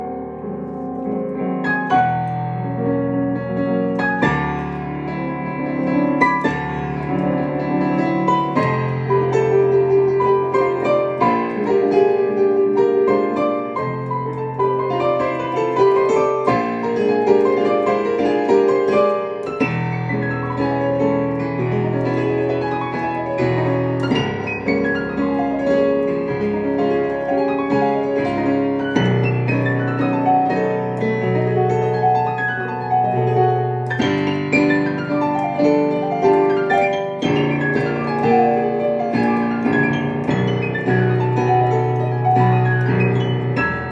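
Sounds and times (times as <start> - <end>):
solo piano piece: 0.0 - 43.9.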